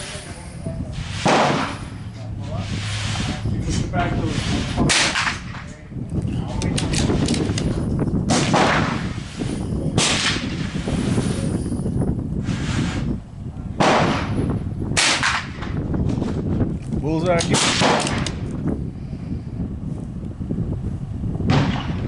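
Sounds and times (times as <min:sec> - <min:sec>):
wind noise on microphone: 0:00.0 - 0:22.0
rifle shots with echo: 0:01.2 - 0:01.8, 0:08.3 - 0:09.0, 0:10.0 - 0:10.6, 0:13.8 - 0:15.7, 0:17.5 - 0:18.4, 0:21.5 - 0:22.0.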